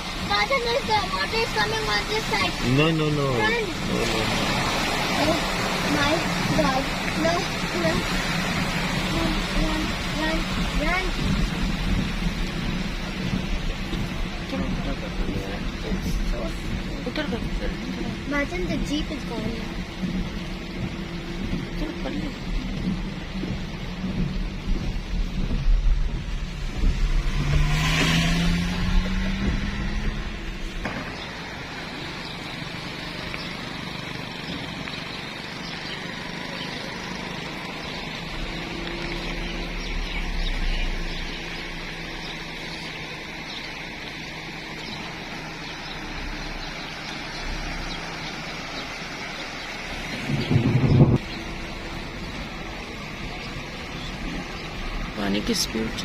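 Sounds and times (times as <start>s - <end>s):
heavy rain and floodwater: 0.0s - 56.0s
loud low thump: 19.5s - 31.6s
vehicle engine rising in pitch: 26.1s - 55.2s.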